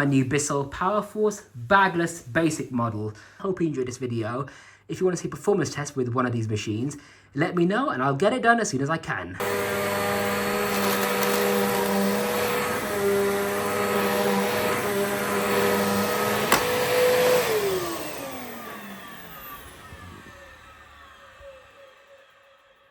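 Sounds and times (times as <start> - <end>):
vacuum cleaner motor: 9.4 - 22.9.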